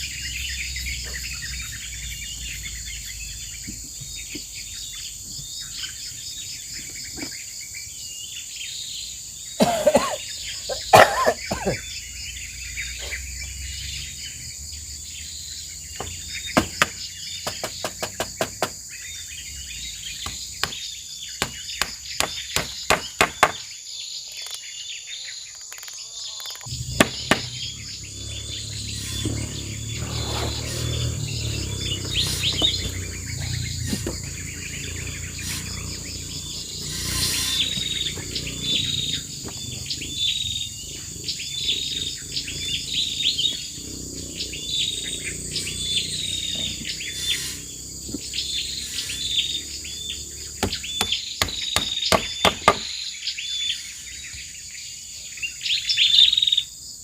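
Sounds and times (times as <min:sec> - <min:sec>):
bird chirping: 0:00.0 - 0:57.0
high insect drone: 0:00.0 - 0:57.0
sharp knocks: 0:16.0 - 0:18.8, 0:20.2 - 0:20.8, 0:21.4 - 0:23.6, 0:26.8 - 0:27.6, 0:50.6 - 0:52.9.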